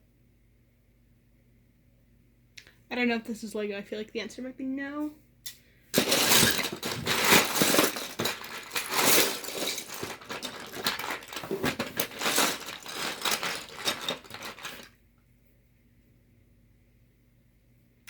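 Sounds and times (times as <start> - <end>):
plastic bricks clattering: 6.0 - 14.9.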